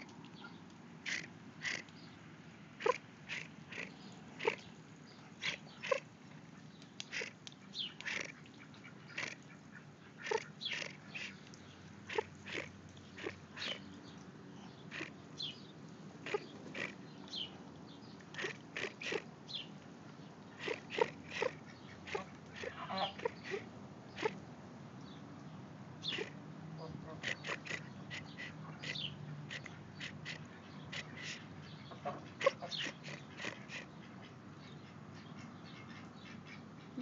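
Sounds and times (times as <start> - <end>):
short high bird calls: 2.8 - 4.7, 5.4 - 6.1, 10.2 - 11.5, 12.1 - 13.9, 14.9 - 15.2, 16.2 - 17.0, 18.3 - 19.3, 20.6 - 24.4, 26.0 - 26.4, 27.2 - 33.9.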